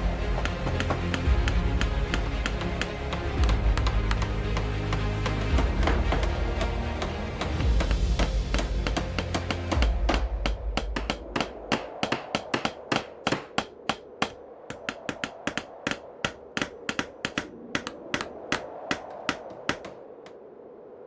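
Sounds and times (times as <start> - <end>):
low background music: 0.0 - 11.7
hammers striking wood: 0.2 - 20.0.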